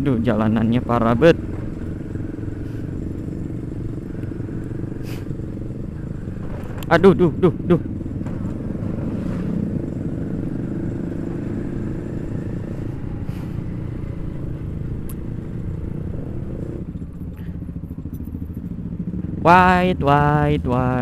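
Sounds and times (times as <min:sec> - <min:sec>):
motorcycle engine running: 0:00.0 - 0:21.0
road rumble: 0:00.0 - 0:21.0.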